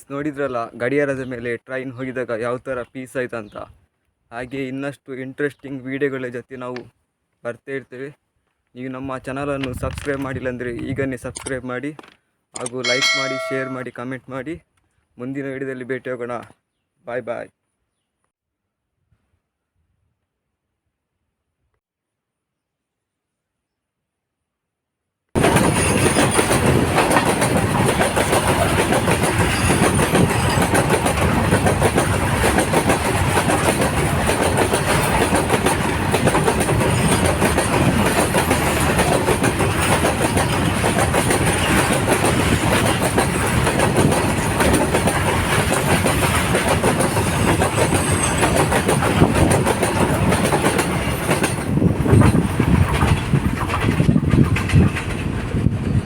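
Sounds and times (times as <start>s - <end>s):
train rumbling and rattling past: 25.4s - 56.0s.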